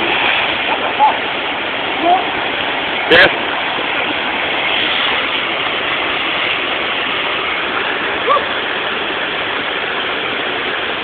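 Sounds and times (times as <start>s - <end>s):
waterfall rushing: 0.0s - 11.0s
person shouting: 8.2s - 8.6s.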